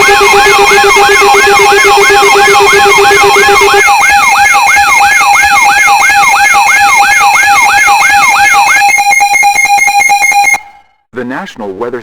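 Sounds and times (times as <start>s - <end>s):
rapid stuttering pulse: 0.0s - 4.6s
siren-like alarm sweep: 0.0s - 11.0s
steady beeping tones: 0.0s - 11.0s.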